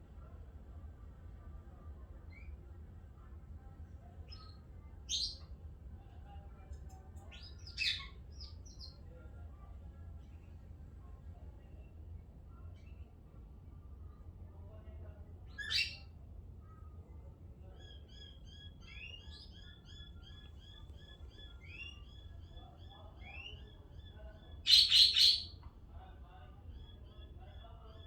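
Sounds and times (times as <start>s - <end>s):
small birds chirping: 17.8s - 25.5s.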